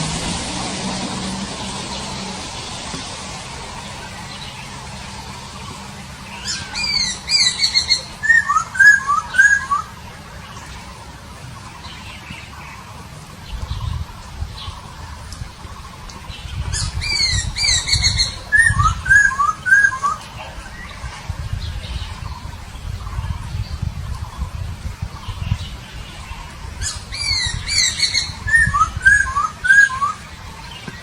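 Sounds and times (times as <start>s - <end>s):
low rumble: 0.0s - 9.0s
bird singing: 0.0s - 31.0s.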